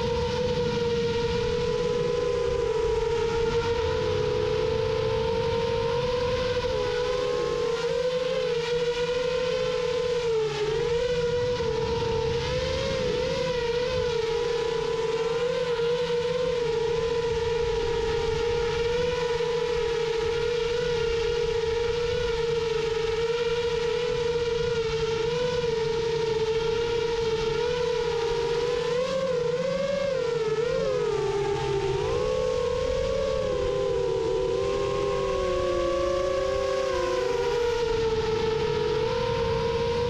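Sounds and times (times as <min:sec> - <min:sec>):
low rushing wind noise: 0:00.0 - 0:40.0
quadcopter motors whining: 0:00.0 - 0:40.0.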